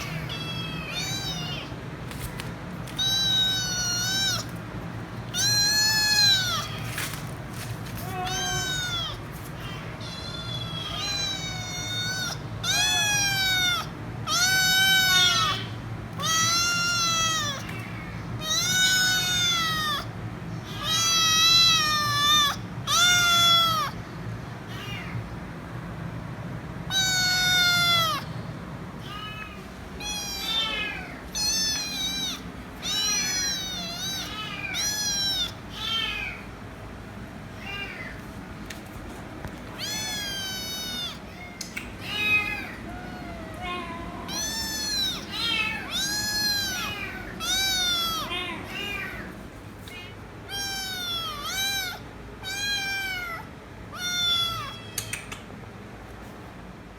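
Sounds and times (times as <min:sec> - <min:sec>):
kitten meowing: 0:00.0 - 0:01.8, 0:02.9 - 0:04.6, 0:05.3 - 0:07.3, 0:08.0 - 0:24.0, 0:26.9 - 0:28.3, 0:29.0 - 0:36.5, 0:39.7 - 0:49.3, 0:49.9 - 0:55.4.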